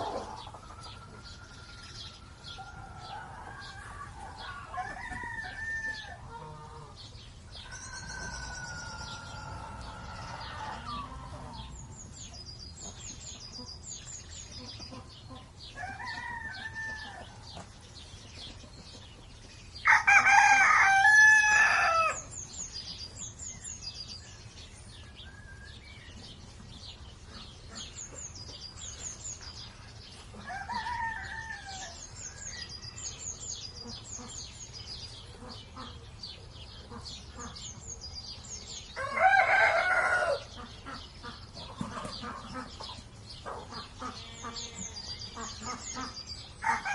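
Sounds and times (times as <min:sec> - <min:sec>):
small birds chirping: 0:00.0 - 0:46.9
rooster crowing: 0:00.1 - 0:06.5, 0:15.8 - 0:17.2, 0:19.8 - 0:22.2, 0:30.5 - 0:32.0, 0:39.0 - 0:40.5, 0:46.6 - 0:46.9.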